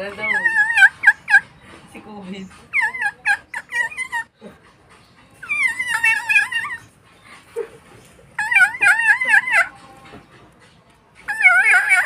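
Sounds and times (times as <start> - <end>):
dog whining: 0.0 - 1.2, 5.4 - 7.0, 8.4 - 9.8, 11.3 - 12.0.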